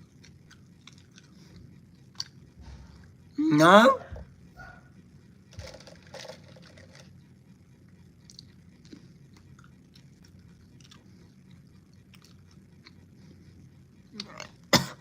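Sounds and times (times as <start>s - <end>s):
wet chewing: 0.0s - 2.5s, 8.2s - 14.6s.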